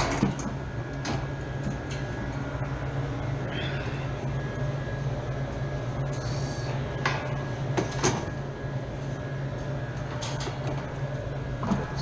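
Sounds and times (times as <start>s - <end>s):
refrigeration machinery hum: 0.0s - 12.0s.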